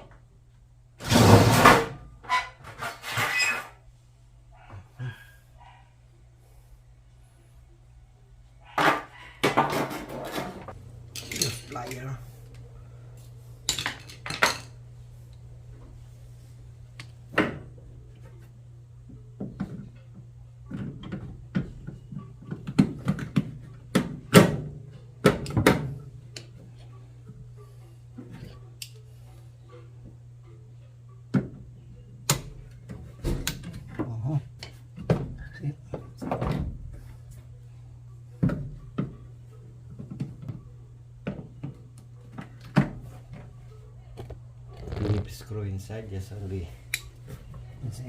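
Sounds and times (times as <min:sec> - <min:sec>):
steady low hum: 0:10.6 - 0:20.7
tools knocking on washing machine: 0:19.4 - 0:25.9.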